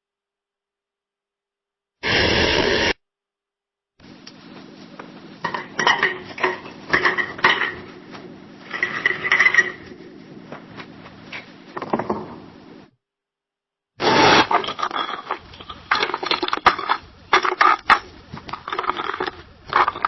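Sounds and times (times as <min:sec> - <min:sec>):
cups and utensils clinking: 0:05.4 - 0:08.1, 0:08.7 - 0:10.1, 0:14.4 - 0:20.0.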